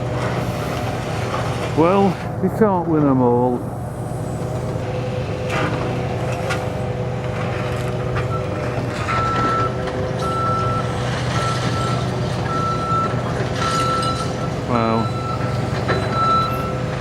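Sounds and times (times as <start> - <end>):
diesel engine running: 0.0 - 17.0
reversing alarm beeping: 8.2 - 17.0.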